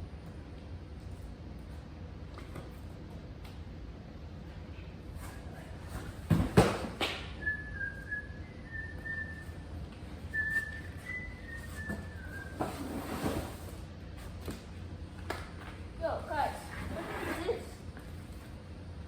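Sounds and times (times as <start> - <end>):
person whistling a tune: 7.4 - 12.9.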